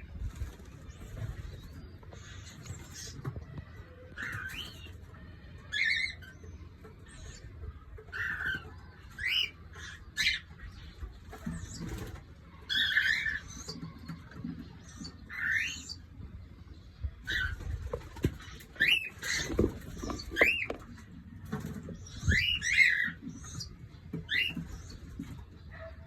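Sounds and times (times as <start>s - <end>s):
cockatiels chirping and whistling: 4.1s - 4.9s, 5.7s - 6.4s, 8.1s - 10.8s, 12.7s - 14.1s, 14.9s - 16.0s, 17.2s - 17.7s, 18.4s - 20.8s, 22.0s - 23.7s, 24.3s - 25.0s.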